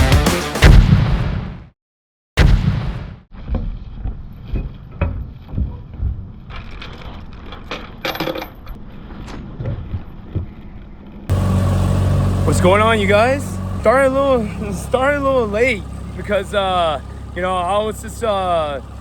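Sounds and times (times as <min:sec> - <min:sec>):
loud hit: 0:00.6 - 0:01.6
wind and water rumble: 0:08.8 - 0:19.0.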